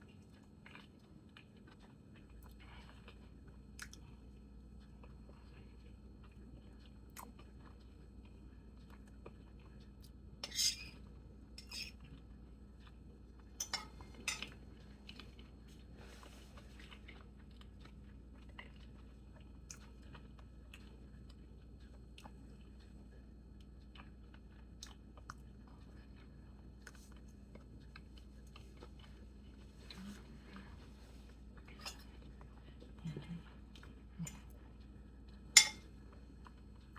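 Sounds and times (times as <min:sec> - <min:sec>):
quiet chewing: 0:00.0 - 0:36.9
steady low hum: 0:00.0 - 0:36.9
cutlery clinking on plate: 0:13.6 - 0:14.6, 0:35.6 - 0:35.9.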